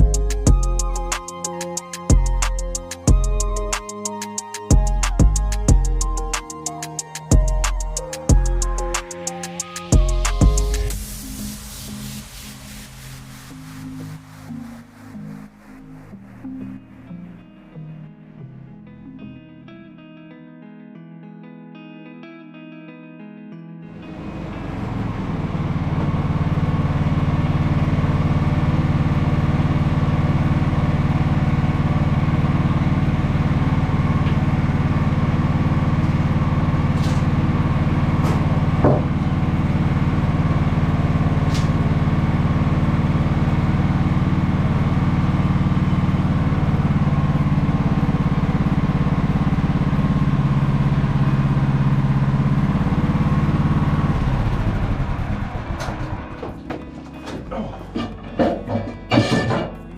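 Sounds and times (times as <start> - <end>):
small gasoline engine running: 24.0 - 56.5
sharp click: 41.5 - 41.8.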